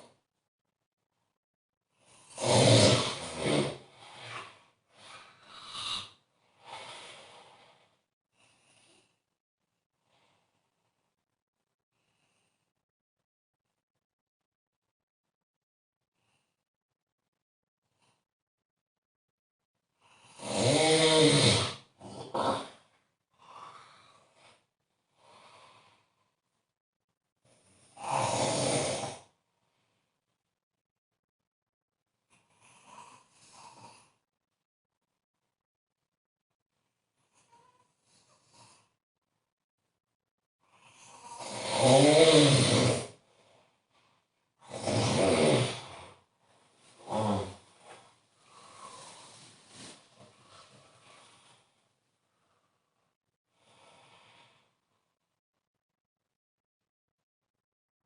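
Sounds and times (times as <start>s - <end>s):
person snoring: 2.0s - 7.7s, 20.0s - 26.0s, 27.6s - 29.3s, 32.4s - 34.2s, 40.6s - 43.2s, 44.6s - 46.2s, 46.9s - 51.7s
faint breaths: 3.8s - 9.4s, 45.8s - 55.0s.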